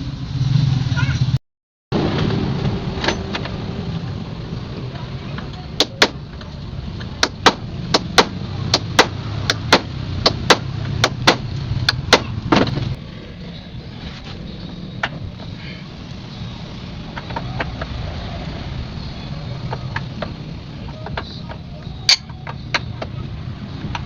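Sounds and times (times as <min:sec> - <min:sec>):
hammer striking metal: 0:19.7 - 0:23.1.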